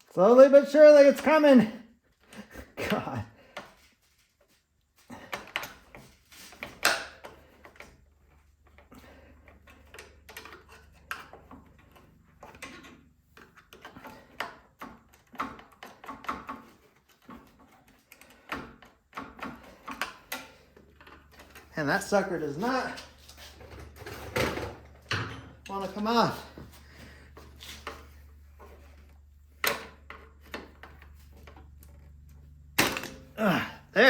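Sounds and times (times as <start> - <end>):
clicks scrapes and knocks: 5.2 - 21.8, 22.5 - 32.5.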